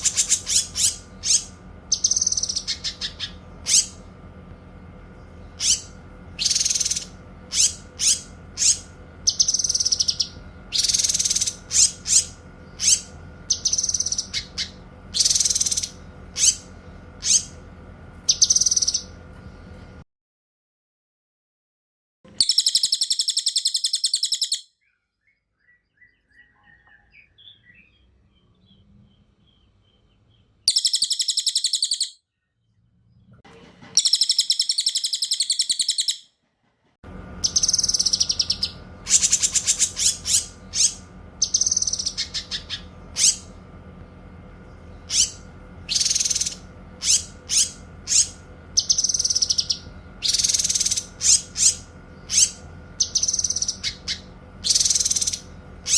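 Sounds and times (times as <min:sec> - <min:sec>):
sharp high bird calls and whistles: 0:00.0 - 0:04.0, 0:05.5 - 0:17.6, 0:18.3 - 0:19.1, 0:22.4 - 0:28.0, 0:30.7 - 0:32.2, 0:34.0 - 0:36.3, 0:37.4 - 0:43.5, 0:45.0 - 0:55.9
faint bird chirps: 0:00.0 - 0:04.1, 0:05.2 - 0:17.5, 0:22.3 - 0:33.3, 0:44.6 - 0:55.9
high-pitched bird trills: 0:00.0 - 0:04.1, 0:05.4 - 0:17.6, 0:18.3 - 0:19.2, 0:22.3 - 0:28.8, 0:29.5 - 0:32.3, 0:34.0 - 0:36.3, 0:37.4 - 0:43.6, 0:44.8 - 0:55.9
steady background hum: 0:00.0 - 0:20.0, 0:22.3 - 0:55.9.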